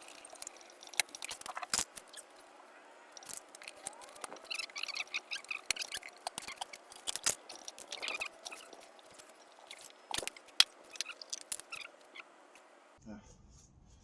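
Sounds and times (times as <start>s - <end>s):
clicks and scrapes: 0.0s - 12.7s
rubber tyre squeaking against rim: 3.1s - 12.7s.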